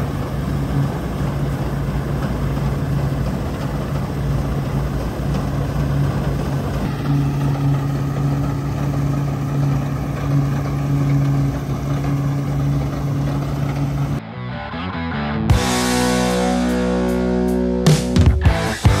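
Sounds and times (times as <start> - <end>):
combine harvester running: 0.0 - 14.2.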